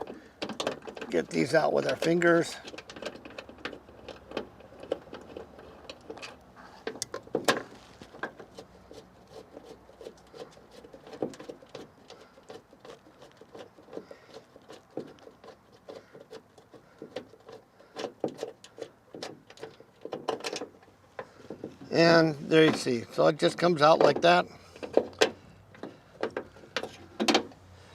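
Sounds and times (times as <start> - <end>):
light clicks and taps of bolts: 23.8 - 27.6.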